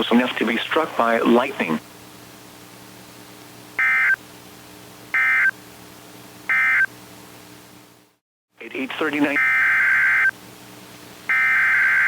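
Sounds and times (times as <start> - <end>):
faint steady hum: 0.0 - 12.0
two-tone digital data bursts: 11.3 - 12.0.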